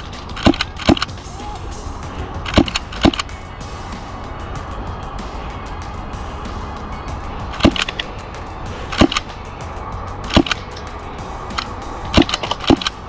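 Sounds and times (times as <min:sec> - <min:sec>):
airsoft gun cracks: 0:00.0 - 0:01.3, 0:02.4 - 0:03.4, 0:07.5 - 0:08.2, 0:08.9 - 0:09.4, 0:10.2 - 0:13.0
background music: 0:00.0 - 0:13.0.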